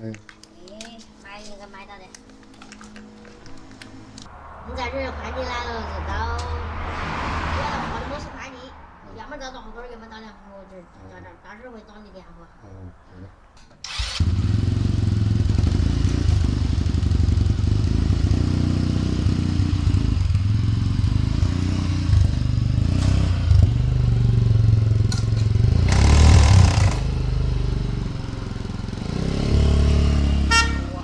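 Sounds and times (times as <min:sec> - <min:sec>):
motorcycle engine running: 0:13.9 - 0:31.0.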